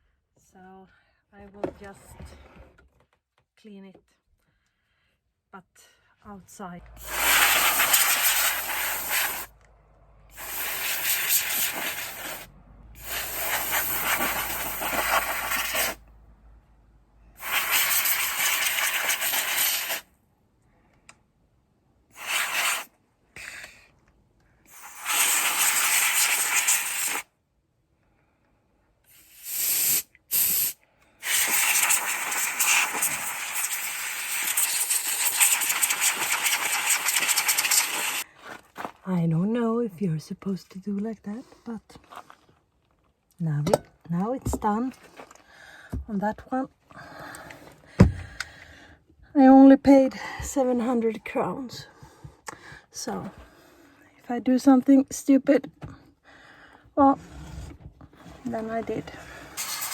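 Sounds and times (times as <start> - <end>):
compressed air spraying: 7.0 - 9.5, 10.3 - 16.0, 17.4 - 20.1, 22.1 - 22.9, 24.7 - 27.2, 29.1 - 38.2, 59.6 - 59.9.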